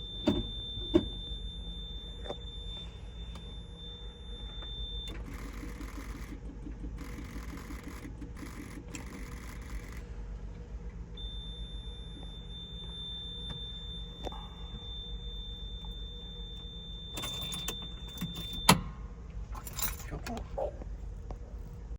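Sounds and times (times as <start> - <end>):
steady high-pitched tone: 0.0 - 5.1, 11.2 - 18.6
keys jangling: 17.2 - 18.8, 19.5 - 20.4
car starter cranking: 17.2 - 20.4.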